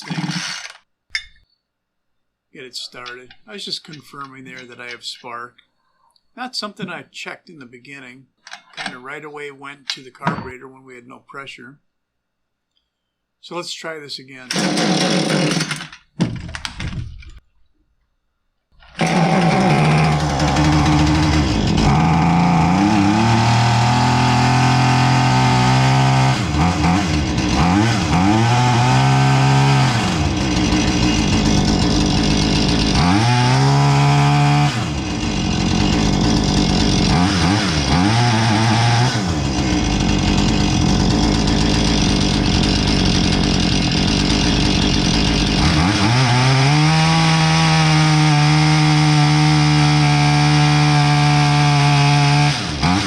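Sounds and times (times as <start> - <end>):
chainsaw engine revving: 0.0 - 0.8, 14.5 - 15.9, 18.8 - 53.0.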